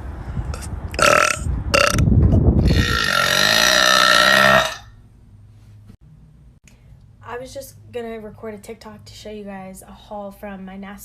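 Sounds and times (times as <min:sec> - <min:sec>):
woman burping loudly: 0:01.0 - 0:02.0, 0:02.6 - 0:04.9.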